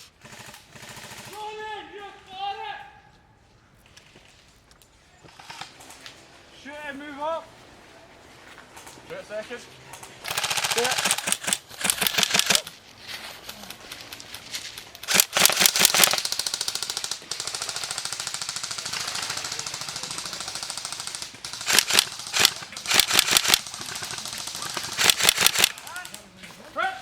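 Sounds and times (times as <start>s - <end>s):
airsoft guns firing: 9.9s - 12.8s, 13.4s - 26.3s.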